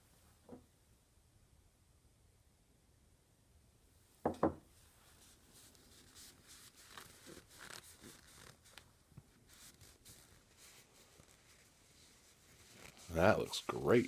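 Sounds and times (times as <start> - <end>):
faint rustling and scratching: 4.7 - 14.0.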